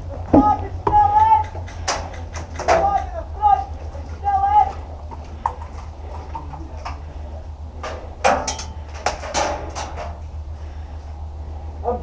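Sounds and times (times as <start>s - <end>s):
steady low rumble: 0.0s - 12.0s
sharp clicks and knocks: 0.3s - 3.1s, 7.8s - 10.2s.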